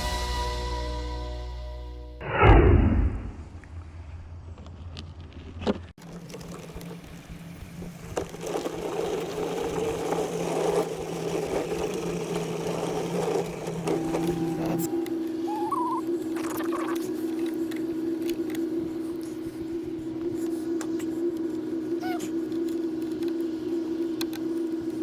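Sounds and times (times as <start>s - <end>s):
low hum: 0.0s - 5.1s, 13.4s - 25.0s
motor running with even drone: 6.3s - 25.0s.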